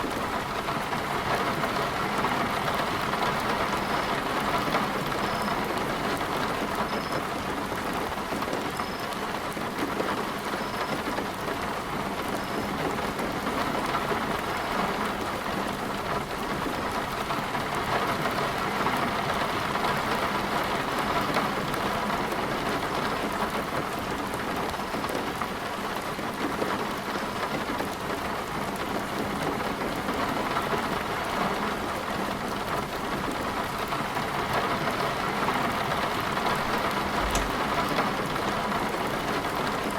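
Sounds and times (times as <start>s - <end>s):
heavy rain hissing: 30.8s - 39.9s.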